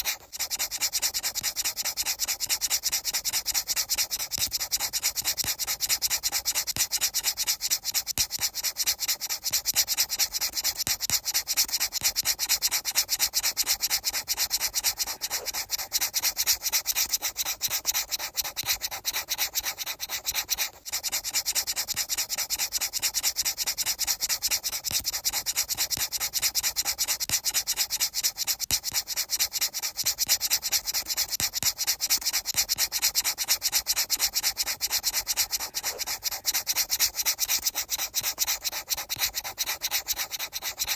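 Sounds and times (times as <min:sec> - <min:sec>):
rapid rubbing: 0:13.4 - 0:18.7, 0:32.5 - 0:40.9.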